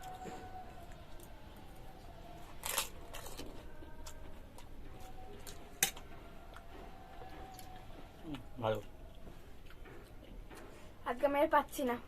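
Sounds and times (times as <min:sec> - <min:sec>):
crisp shell crunching: 0:02.4 - 0:04.2.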